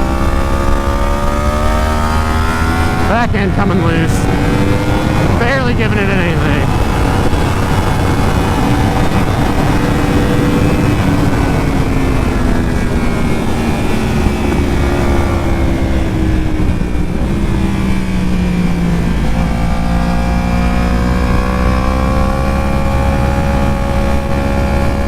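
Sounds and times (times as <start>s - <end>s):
motorcycle engine while riding: 0.0s - 3.2s, 4.0s - 5.6s, 6.5s - 25.0s
wind rush on microphone: 6.6s - 19.8s.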